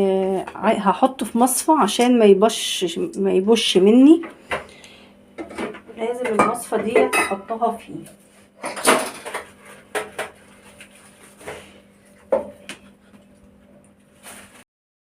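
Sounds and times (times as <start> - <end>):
dishes and utensils clattering: 5.4 - 7.6, 8.6 - 10.4.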